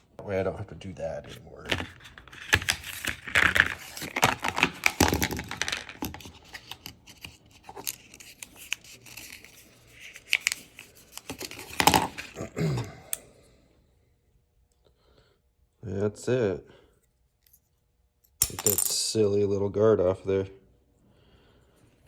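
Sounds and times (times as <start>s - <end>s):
packaging tearing and crinkling: 1.9s - 12.4s.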